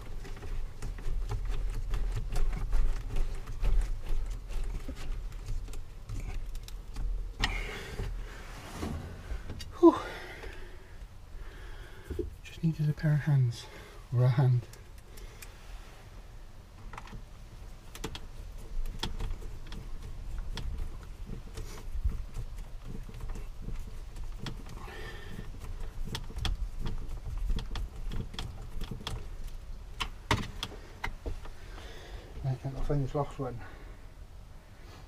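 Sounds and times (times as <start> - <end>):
small clicks taps and knocks: 17.8 - 31.9.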